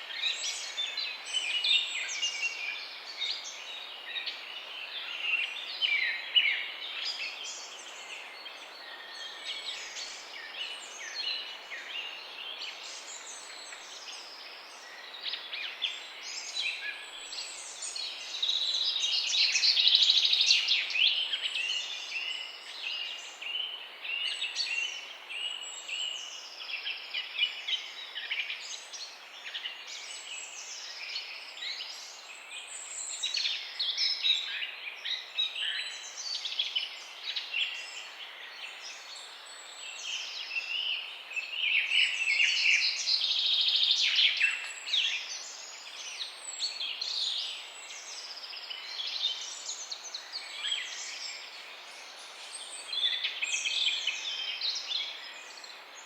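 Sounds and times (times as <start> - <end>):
songbirds chirping and trilling: 0.0 - 56.0.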